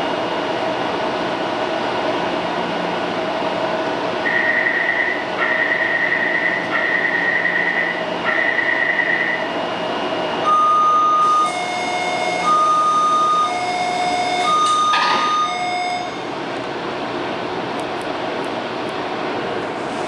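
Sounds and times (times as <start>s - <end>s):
train cabin hum: 0.0s - 20.0s
train running: 0.0s - 20.0s
two-tone door warning chime: 10.4s - 16.3s.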